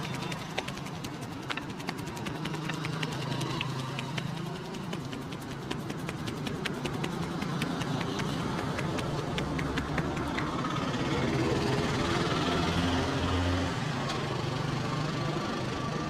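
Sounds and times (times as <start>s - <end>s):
hands tapping on head: 0.0s - 11.7s.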